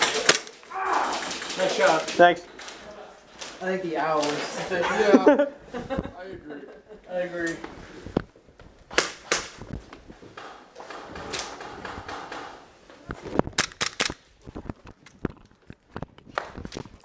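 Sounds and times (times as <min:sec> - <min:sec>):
airsoft guns firing: 0:10.4 - 0:12.7.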